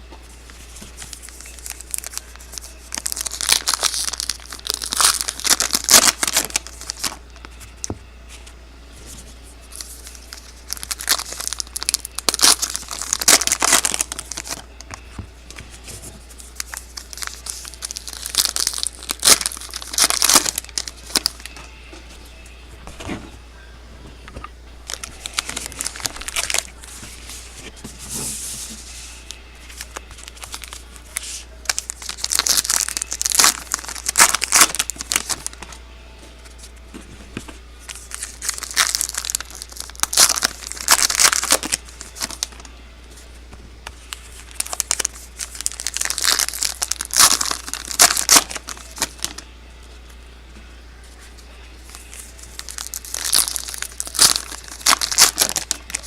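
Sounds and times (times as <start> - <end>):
low steady hum: 0.0 - 56.0
wrappers torn and crinkled: 1.0 - 7.2, 9.7 - 14.9, 16.4 - 21.6, 24.8 - 26.9, 29.3 - 35.6, 37.8 - 42.6, 44.1 - 49.4, 51.8 - 56.0.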